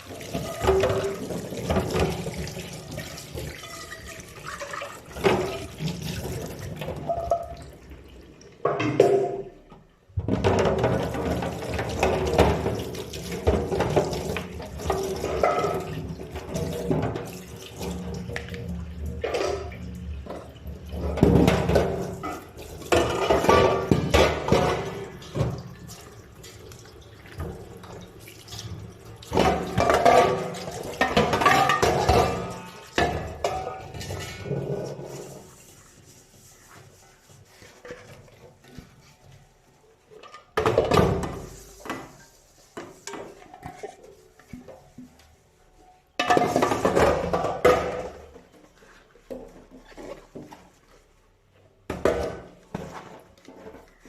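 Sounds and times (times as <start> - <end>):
tap water running into sink: 0.0 - 9.5, 10.3 - 35.7
dishes clattering: 10.2 - 18.5, 21.0 - 25.7, 29.3 - 35.5, 46.2 - 48.4.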